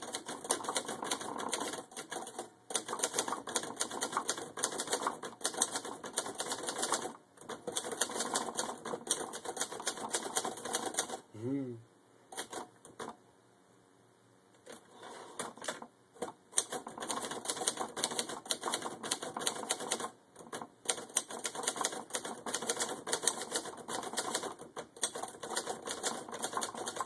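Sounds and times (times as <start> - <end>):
typewriter keys clacking: 0.0 - 11.2, 15.4 - 27.0.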